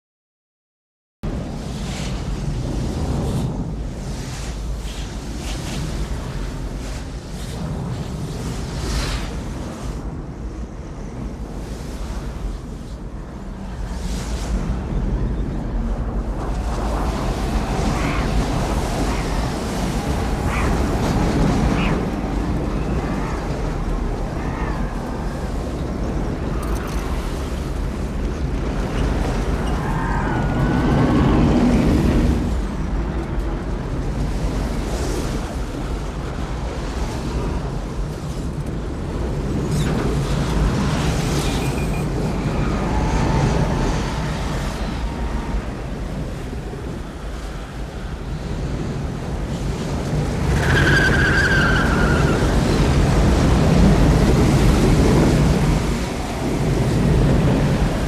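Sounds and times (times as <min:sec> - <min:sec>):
storm wind rumble: 0:01.2 - 0:58.0
vehicle engines: 0:16.4 - 0:36.4
tire squeals: 0:29.0 - 0:31.7, 0:41.4 - 0:46.0, 0:50.4 - 0:53.1.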